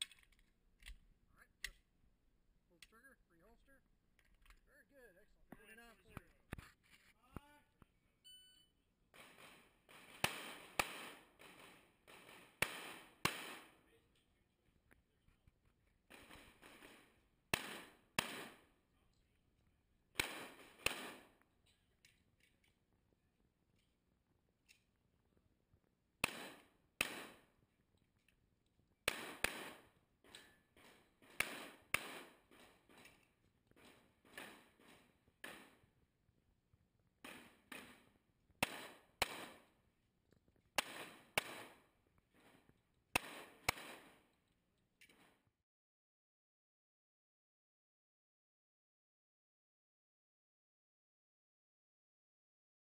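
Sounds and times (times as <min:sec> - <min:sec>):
pistol shots echoing: 0:09.2 - 0:13.9, 0:16.1 - 0:18.6, 0:20.2 - 0:21.4, 0:26.2 - 0:27.5, 0:29.0 - 0:33.0, 0:37.2 - 0:39.8, 0:40.8 - 0:41.8, 0:43.2 - 0:44.2
faint gunshot reports: 0:20.2 - 0:21.3.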